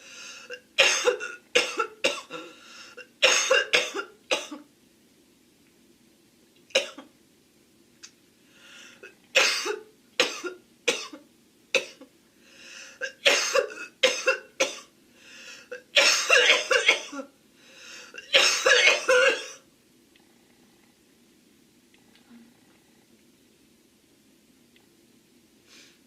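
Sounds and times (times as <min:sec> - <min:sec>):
faint breaths drawn in: 0:00.0 - 0:00.5, 0:02.4 - 0:03.0, 0:08.4 - 0:09.1, 0:12.3 - 0:13.0, 0:15.0 - 0:15.7, 0:17.5 - 0:18.2, 0:25.6 - 0:26.0
woman coughing: 0:00.6 - 0:04.6, 0:09.4 - 0:11.2, 0:11.8 - 0:12.0, 0:13.0 - 0:14.9, 0:15.7 - 0:17.3, 0:18.2 - 0:19.6.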